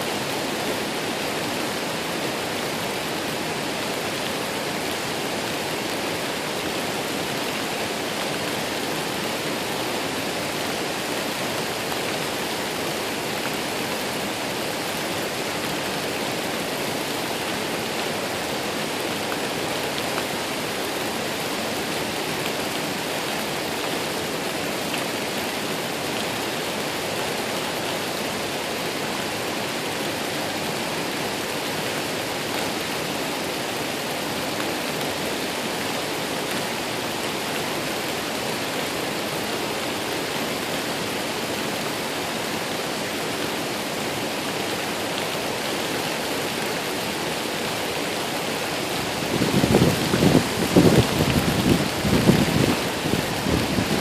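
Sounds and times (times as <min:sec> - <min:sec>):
waterfall rushing: 0:00.0 - 0:54.0.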